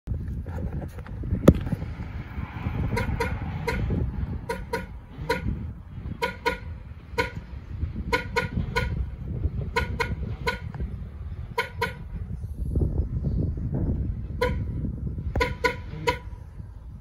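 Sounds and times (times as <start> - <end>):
low rumble: 0.1 - 17.0
car alarm horn honks: 2.9 - 7.4, 8.1 - 9.1, 9.7 - 10.7, 11.5 - 12.1, 14.4 - 14.7, 15.4 - 16.4.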